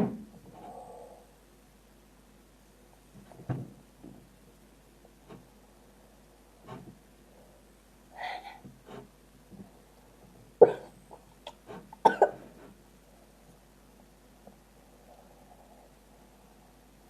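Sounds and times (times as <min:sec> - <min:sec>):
girl coughing: 0:10.6 - 0:10.9, 0:11.5 - 0:12.4.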